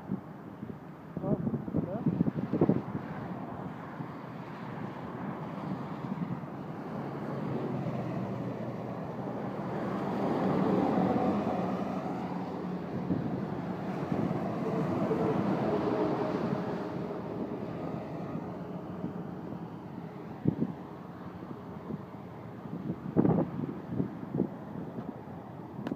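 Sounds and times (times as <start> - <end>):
wind on microphone: 0.0 - 21.0, 21.6 - 25.9
vehicles passing: 0.0 - 25.9.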